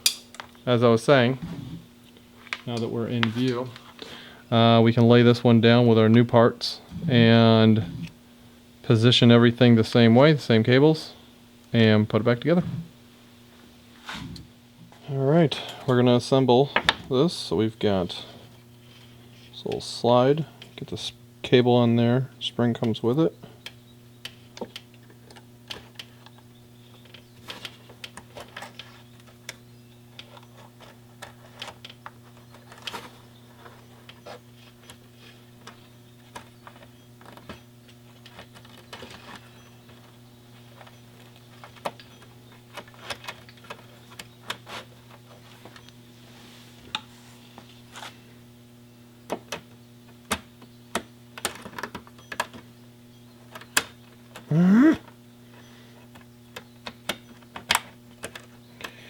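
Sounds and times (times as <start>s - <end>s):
low electrical hum: 0.0s - 59.0s
small clicks and taps of parts: 49.3s - 52.6s, 56.1s - 59.0s.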